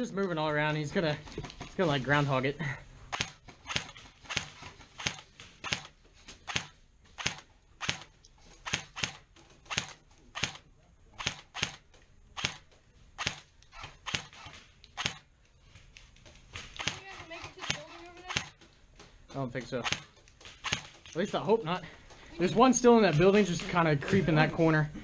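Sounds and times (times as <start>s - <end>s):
airsoft gun shots: 3.1s - 10.6s, 11.2s - 11.8s, 12.4s - 15.3s, 16.6s - 18.6s, 19.6s - 21.1s.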